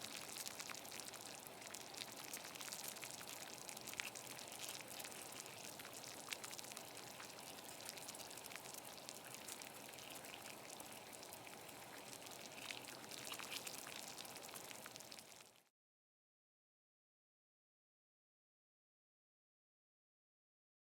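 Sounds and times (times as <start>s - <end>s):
water boiling and bubbling: 0.0s - 15.7s.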